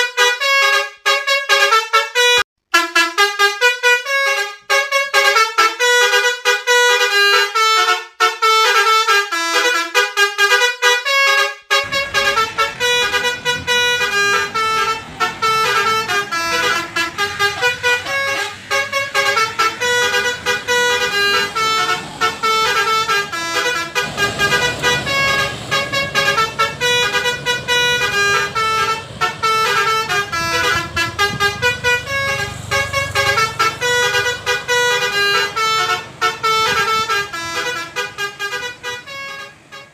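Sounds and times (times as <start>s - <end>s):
musical bus horn melody: 0.0s - 39.9s
low engine rumble: 11.8s - 39.9s.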